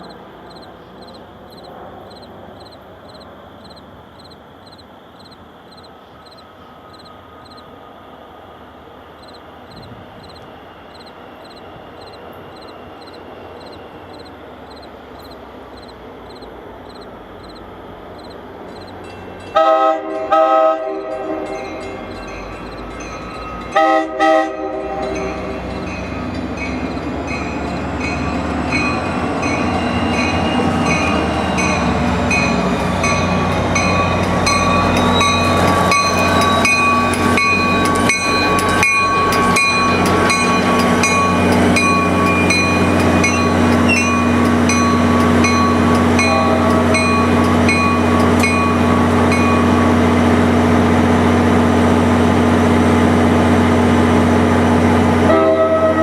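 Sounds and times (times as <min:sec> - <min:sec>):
train whine: 0:00.0 - 0:56.0
train wheels clicking: 0:09.2 - 0:19.5, 0:25.0 - 0:50.5
train horn blasts: 0:19.5 - 0:21.7, 0:23.7 - 0:25.5, 0:46.2 - 0:47.1, 0:55.2 - 0:56.0.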